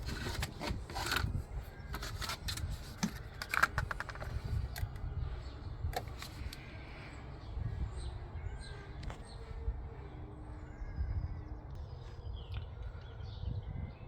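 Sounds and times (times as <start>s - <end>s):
birds chirping: 0.0s - 14.0s.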